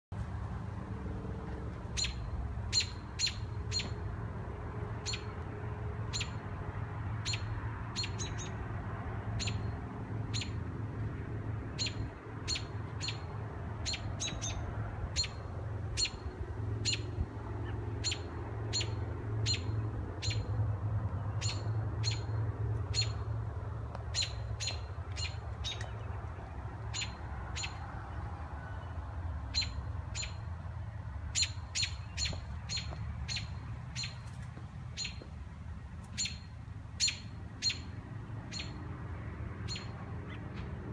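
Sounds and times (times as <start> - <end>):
baby birds chirping: 2.0 - 4.0, 5.0 - 5.3, 6.1 - 6.4, 7.2 - 8.6, 9.4 - 9.7, 11.8 - 17.2, 18.0 - 20.5, 21.4 - 23.2, 24.1 - 27.8, 29.5 - 30.5, 31.3 - 34.3, 35.0 - 35.3, 36.1 - 38.8.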